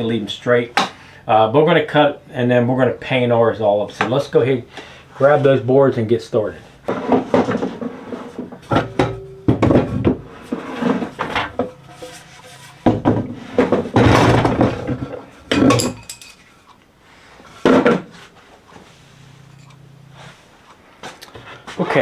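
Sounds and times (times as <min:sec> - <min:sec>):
wooden boards knocking and clattering: 0:06.9 - 0:16.0.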